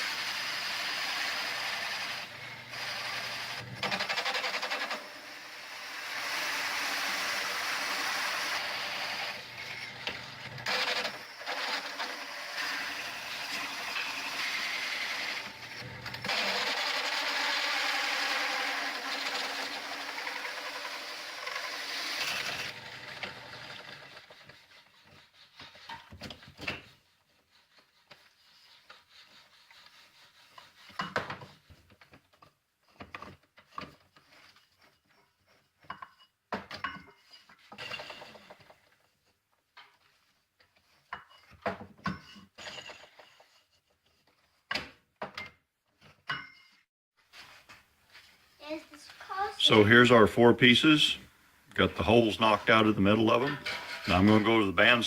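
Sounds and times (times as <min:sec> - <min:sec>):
power drill cutting plywood: 0:00.0 - 0:24.4, 0:52.5 - 0:55.0.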